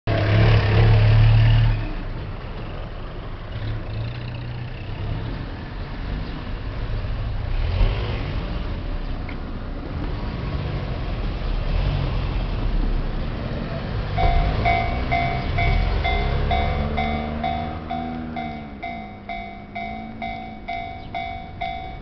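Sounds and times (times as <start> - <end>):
traffic noise: 0.1 - 22.0
vehicle engine running: 14.2 - 22.0.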